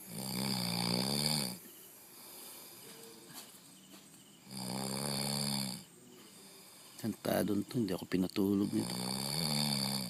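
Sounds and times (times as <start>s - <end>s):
loud buzzing snores: 0.0s - 2.8s, 4.4s - 7.0s, 8.6s - 10.0s
quiet breathing: 0.0s - 10.0s.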